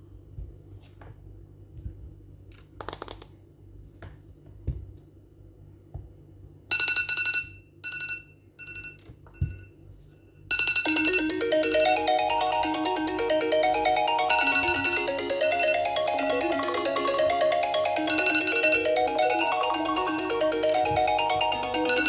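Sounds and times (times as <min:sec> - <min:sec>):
melodic phone ringtone: 0:10.5 - 0:22.0.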